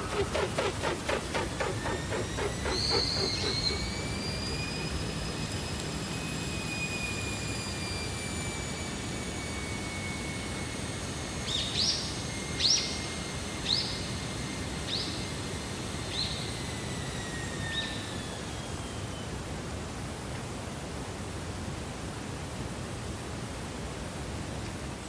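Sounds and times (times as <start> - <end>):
distant aircraft passing: 0.0 - 19.2.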